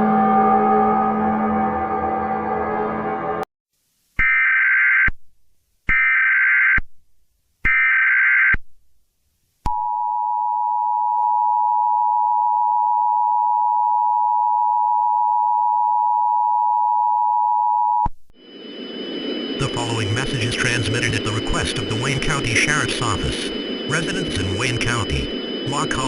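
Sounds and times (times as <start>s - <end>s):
harsh data bursts: 18.4s - 26.0s
two-tone attention signal: 19.5s - 26.0s.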